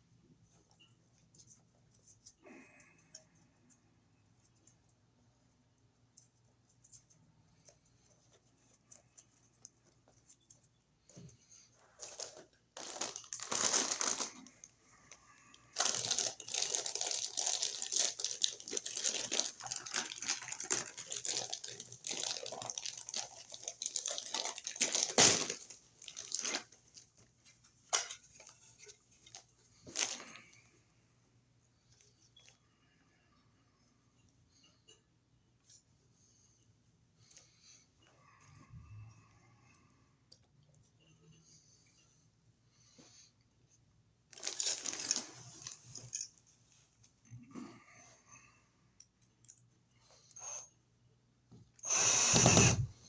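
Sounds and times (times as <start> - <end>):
crinkling handling noise: 6.0 - 30.8, 44.3 - 47.2.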